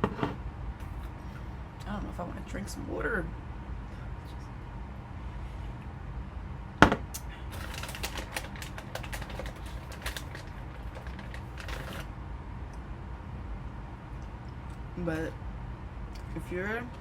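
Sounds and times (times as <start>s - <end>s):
steady low hum: 0.0s - 17.0s
clicks and rustling of handled objects: 7.5s - 12.1s.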